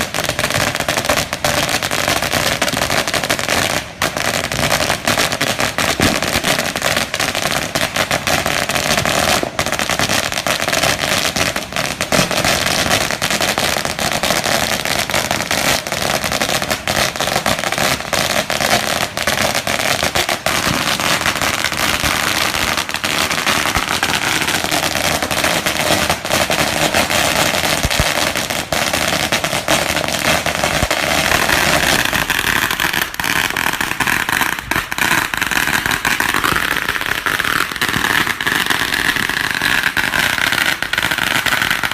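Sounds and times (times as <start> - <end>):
firecracker string bangs: 6.0 - 6.3.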